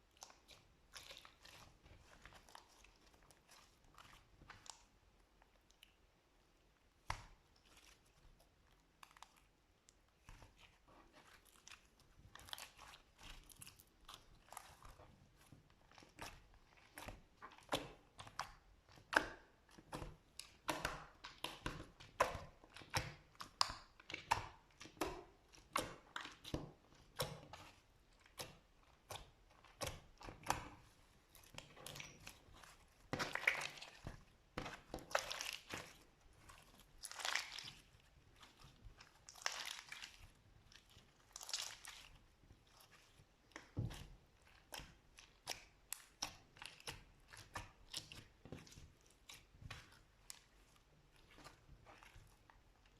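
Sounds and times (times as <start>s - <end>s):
slime squeezed crackling: 31.3s - 52.9s.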